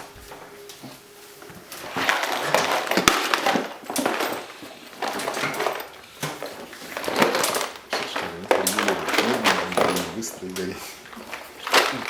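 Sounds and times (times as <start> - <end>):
wood fire crackling and popping: 1.5 - 12.0.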